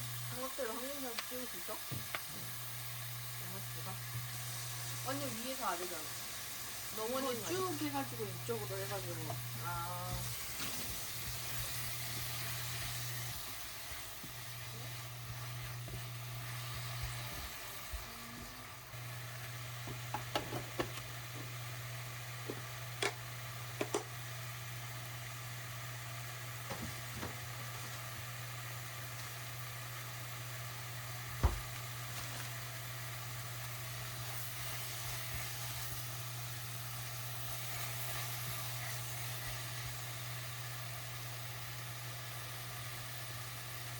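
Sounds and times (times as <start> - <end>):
food sizzling in a frying pan: 0.0 - 43.9
utensil clicking against pan: 23.0 - 23.2, 23.8 - 24.1.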